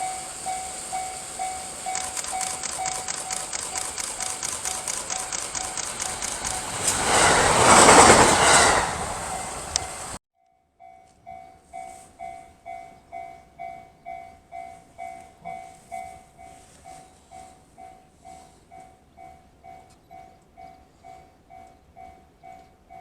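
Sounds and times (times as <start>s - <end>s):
level-crossing alarm bell ringing: 0.0s - 7.3s.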